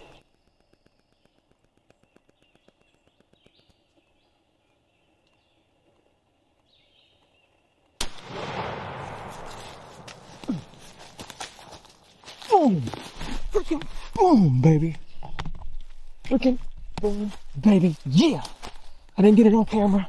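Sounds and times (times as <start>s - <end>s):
faint songbird chirps: 0.0s - 8.0s
shotgun blast: 8.0s - 10.8s.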